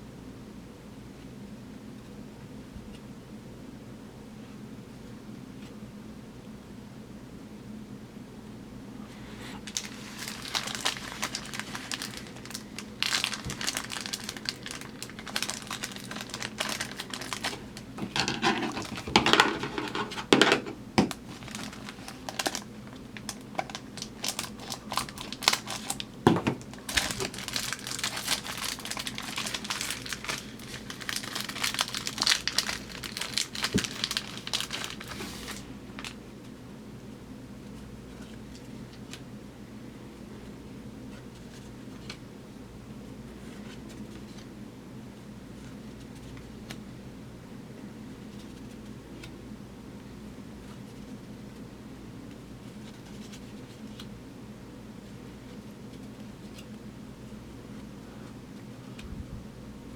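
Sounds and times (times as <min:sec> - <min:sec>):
plastic wrapper crinkling: 0:09.6 - 0:36.2.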